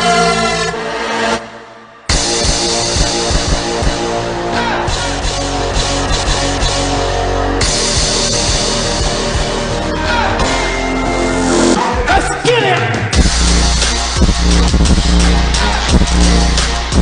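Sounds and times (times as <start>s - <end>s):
heavy bass beat: 2.1s - 10.7s, 11.7s - 17.0s
loud rock music with drums: 2.1s - 17.0s.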